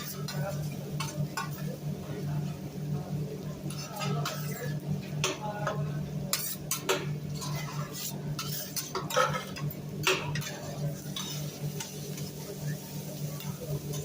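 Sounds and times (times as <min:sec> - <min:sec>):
food sizzling: 0:00.0 - 0:02.4, 0:06.1 - 0:14.0
metal spatulas scraping griddle: 0:03.7 - 0:04.8, 0:06.3 - 0:12.4.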